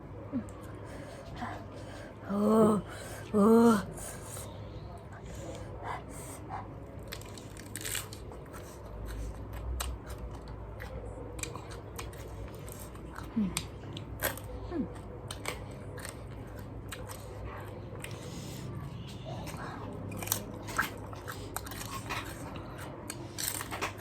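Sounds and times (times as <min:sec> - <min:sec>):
cabbage being chewed: 0:05.1 - 0:24.0.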